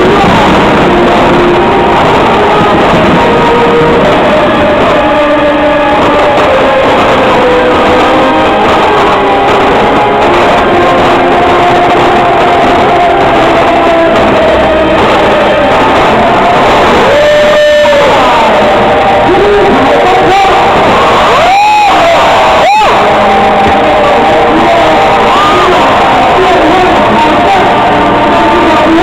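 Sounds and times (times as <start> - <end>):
loud guitar music: 0.0 - 29.0.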